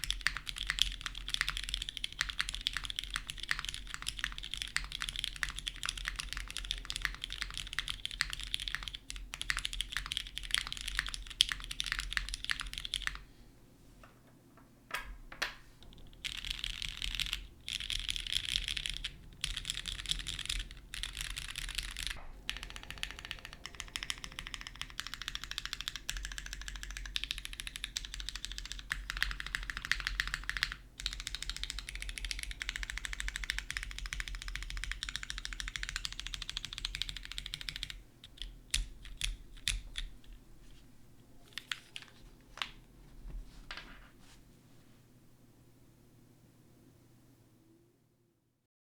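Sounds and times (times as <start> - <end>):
mechanical keyboard typing: 0.0 - 13.2, 15.8 - 40.4, 41.5 - 42.8.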